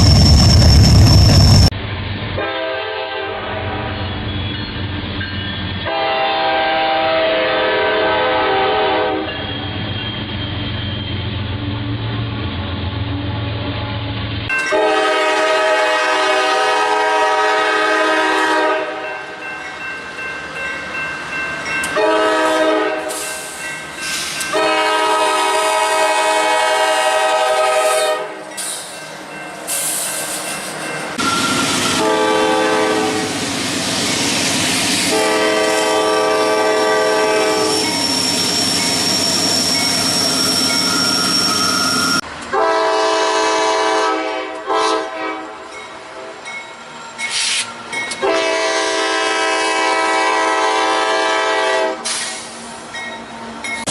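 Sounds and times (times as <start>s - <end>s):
passing train noise: 0.0s - 53.9s
locomotive horn blasts: 2.4s - 4.0s, 5.9s - 9.4s, 13.8s - 19.1s, 21.9s - 23.2s, 24.5s - 28.4s, 31.2s - 33.3s, 35.1s - 37.9s, 42.5s - 45.6s, 48.2s - 52.1s.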